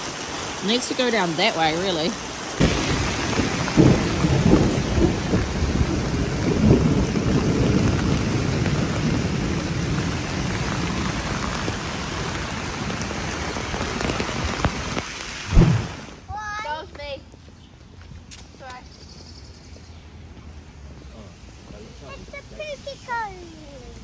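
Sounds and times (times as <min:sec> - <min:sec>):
heavy rain pouring: 0:00.0 - 0:16.3
low thunder rumbling: 0:02.6 - 0:14.8, 0:15.4 - 0:16.2
loud thump: 0:15.4 - 0:16.2.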